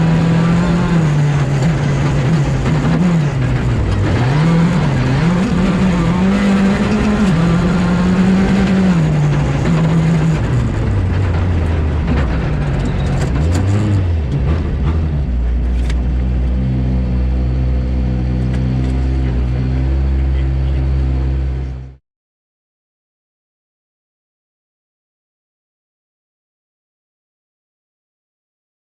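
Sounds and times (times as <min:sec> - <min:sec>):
rally car engine revving: 0:00.0 - 0:22.0.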